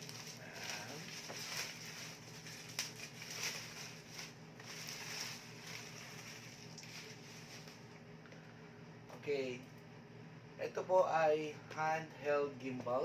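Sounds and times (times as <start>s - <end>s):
packaging rustling: 0.0s - 7.9s.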